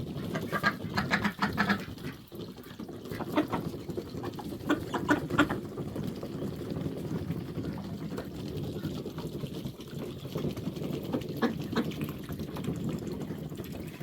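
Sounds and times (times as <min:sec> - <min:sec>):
ducks and geese calling: 0:00.2 - 0:02.3, 0:03.0 - 0:05.6.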